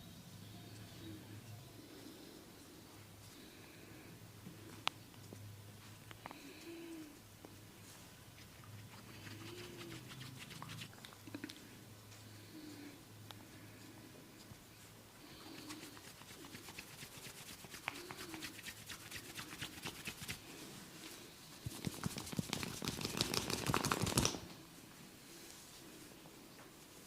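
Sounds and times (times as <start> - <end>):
fingers rubbing hair and scalp: 8.4 - 11.0, 15.3 - 20.6, 21.6 - 24.5.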